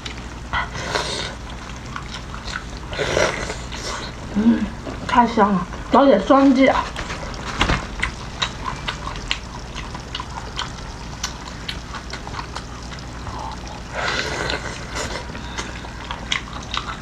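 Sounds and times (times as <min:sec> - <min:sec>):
person chewing food: 0:00.0 - 0:05.9, 0:06.8 - 0:17.0
wet smacks and crisp clicks: 0:06.9 - 0:13.1.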